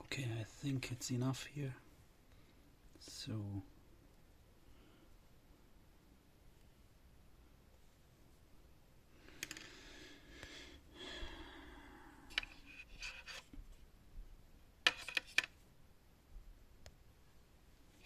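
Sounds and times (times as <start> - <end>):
long breathy sigh: 9.2 - 12.3
clicks and taps of hard parts: 12.3 - 12.6.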